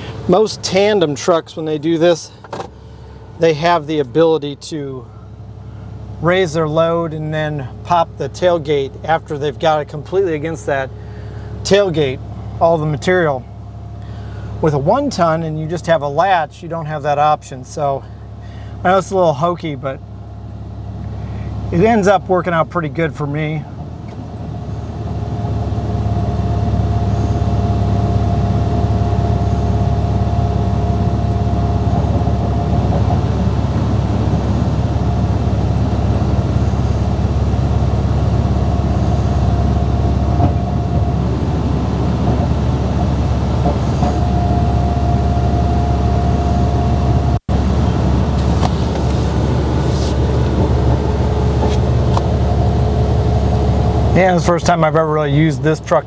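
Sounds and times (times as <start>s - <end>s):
steady whine: 0.0s - 5.6s, 24.6s - 56.0s
truck engine drone: 0.0s - 56.0s.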